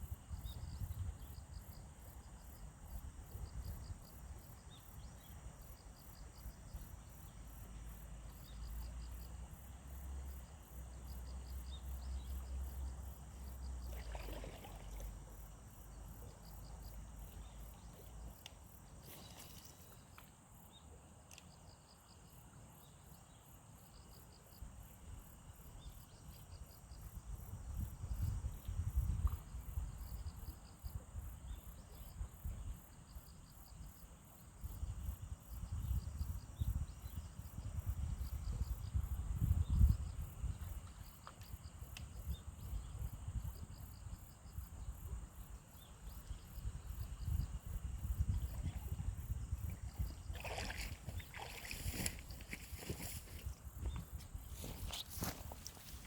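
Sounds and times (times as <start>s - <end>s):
insect pulsed bursts: 42.4s - 56.0s.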